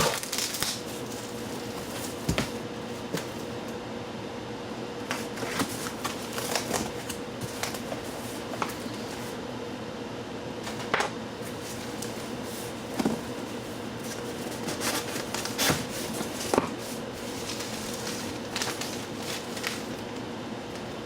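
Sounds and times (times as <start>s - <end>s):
packing material rustling: 0.0s - 3.5s, 5.1s - 9.4s, 11.4s - 20.0s
steady background hum: 0.0s - 21.0s.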